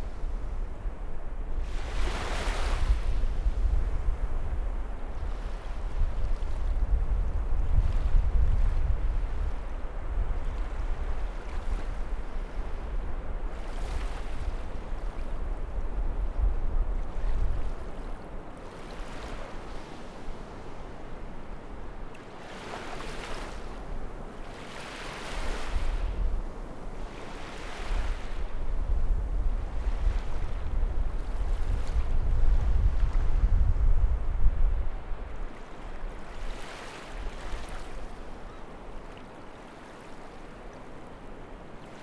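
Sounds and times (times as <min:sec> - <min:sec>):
wind buffeting microphone: 0:00.0 - 0:17.9, 0:27.8 - 0:36.2
waves washing onto shore: 0:00.7 - 0:06.8, 0:17.0 - 0:33.5.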